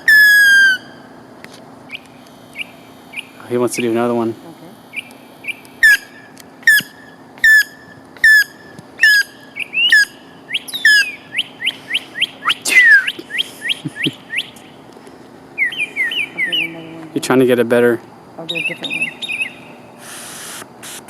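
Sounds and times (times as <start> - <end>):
mockingbird whistling and chirping: 0.0 - 1.0, 4.9 - 14.8, 15.6 - 16.8, 18.5 - 20.5.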